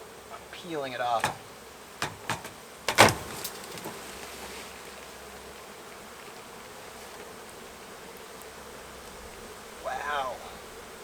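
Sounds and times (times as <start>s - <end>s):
bee colony buzzing: 0.0s - 11.0s
sharp crack of wood: 1.2s - 4.0s.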